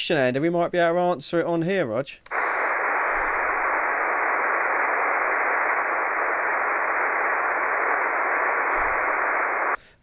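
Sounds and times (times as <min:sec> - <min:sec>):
radio static rushing: 0:02.3 - 0:09.8.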